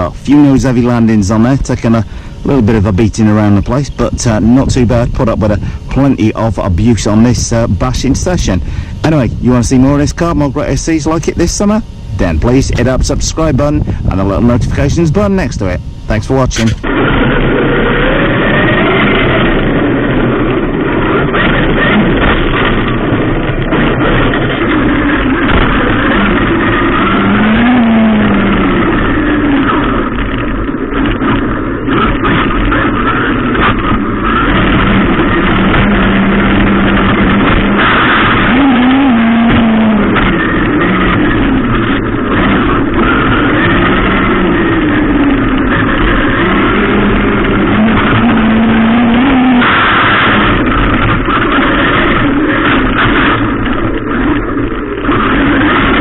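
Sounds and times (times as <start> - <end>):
wind and tyre noise: 0.0 - 56.0
toy truck motor revving: 25.0 - 30.0, 42.4 - 50.8.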